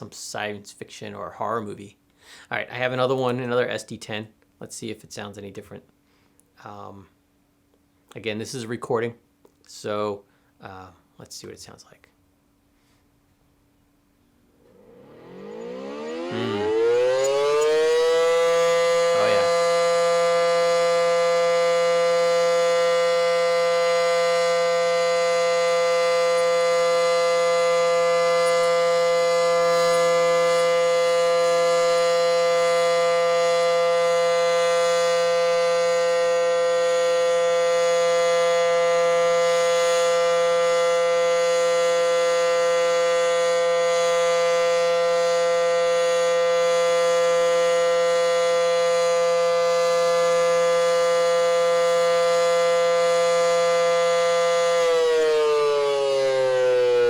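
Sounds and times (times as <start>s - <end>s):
air raid siren steady tone: 14.4s - 57.0s.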